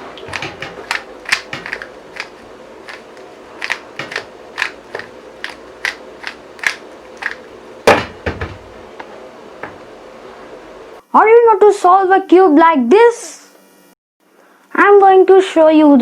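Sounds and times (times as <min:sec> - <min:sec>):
thump: 0:07.9 - 0:08.7.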